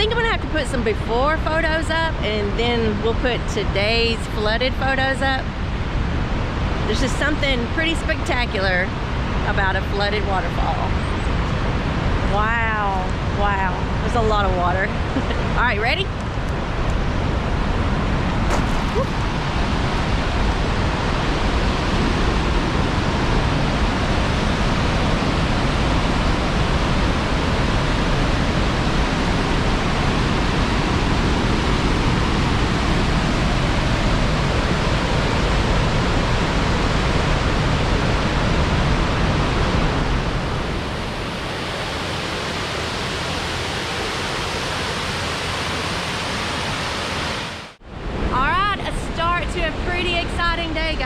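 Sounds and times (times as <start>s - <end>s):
waterfall rushing: 18.0s - 48.3s.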